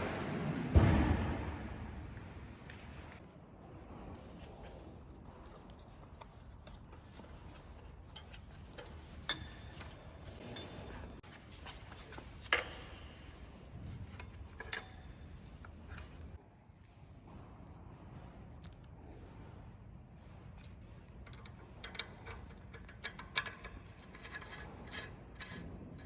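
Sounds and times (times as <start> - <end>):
low hum: 0.0 - 16.4
metal tools clinking: 5.4 - 16.4.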